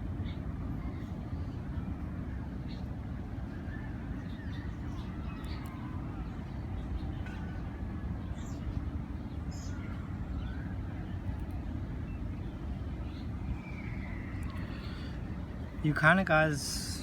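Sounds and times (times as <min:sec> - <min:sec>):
low outdoor rumble: 0:00.0 - 0:17.0
faint bird chirps: 0:03.5 - 0:15.3.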